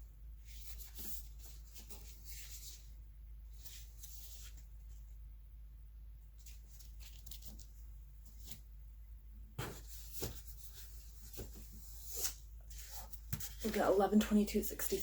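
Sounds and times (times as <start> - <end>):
books rustling in cardboard box: 9.6 - 14.0.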